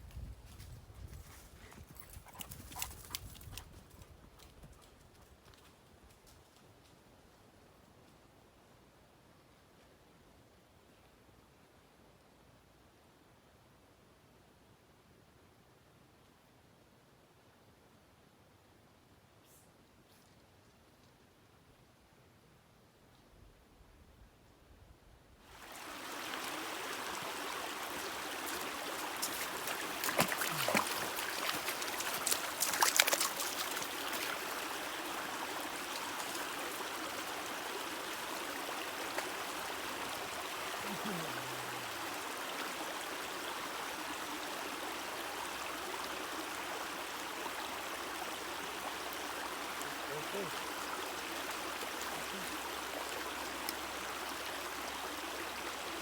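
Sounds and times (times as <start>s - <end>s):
stream water rushing: 25.5s - 56.0s.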